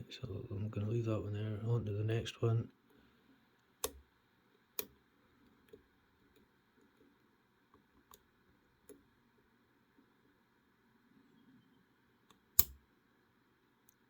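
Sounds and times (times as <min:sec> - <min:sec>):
lock pick clicks: 0:12.6 - 0:12.8.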